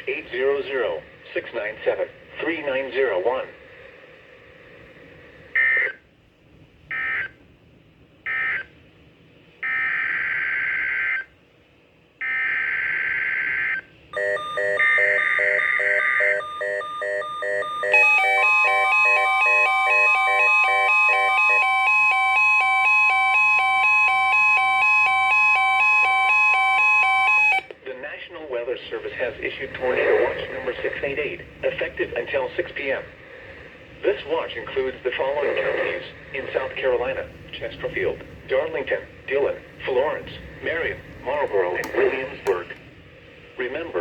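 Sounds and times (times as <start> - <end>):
alternating electronic alarm beeps: 12.2 - 27.7
steady warning tone: 12.2 - 27.7.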